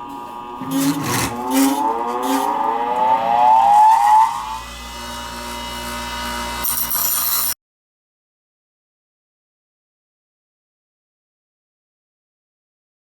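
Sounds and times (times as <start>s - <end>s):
electric grinder whining: 0.0s - 7.6s.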